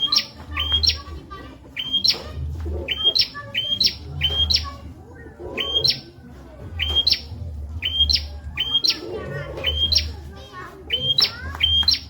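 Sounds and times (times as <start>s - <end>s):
bird song with whistled notes: 0.0s - 1.1s, 1.7s - 4.8s, 5.5s - 6.2s, 6.8s - 10.3s, 10.9s - 12.0s.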